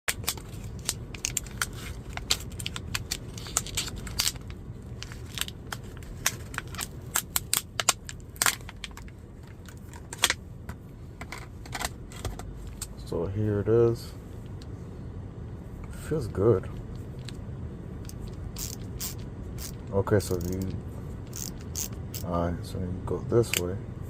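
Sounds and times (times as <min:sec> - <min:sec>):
packaging crackling and tearing: 0:00.1 - 0:09.0.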